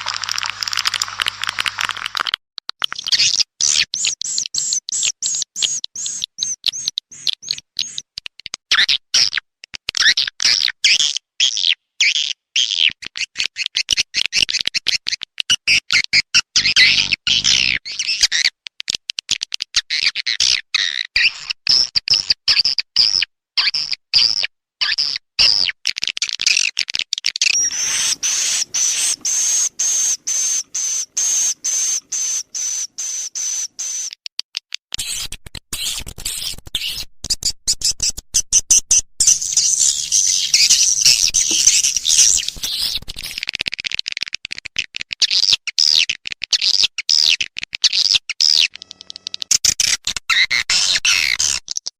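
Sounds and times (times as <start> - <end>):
swiftlet chattering twitters: 27.6 - 34.1, 39.2 - 43.4.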